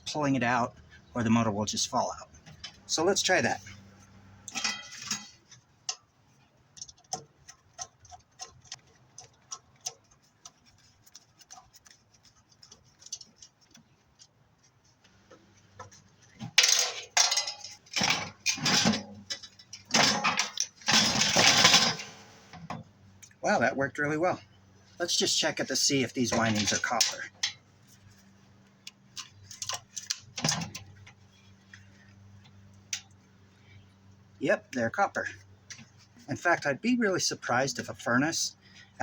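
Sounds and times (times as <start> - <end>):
metal scrapes and clanks: 4.5 - 5.5, 15.9 - 22.2
small metal clicks: 6.7 - 14.4, 28.8 - 31.1.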